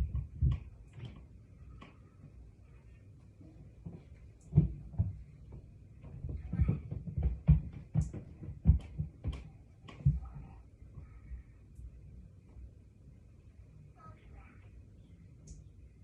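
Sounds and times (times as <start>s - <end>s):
dull thuds and knocks: 0.0s - 1.3s, 3.8s - 10.5s.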